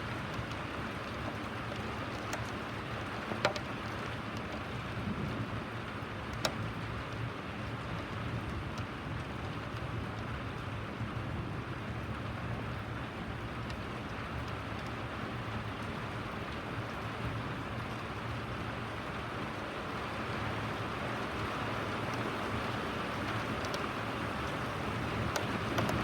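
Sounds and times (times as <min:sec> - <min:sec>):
steady rain falling: 0:00.0 - 0:26.0
sharp drip taps: 0:00.3 - 0:04.7.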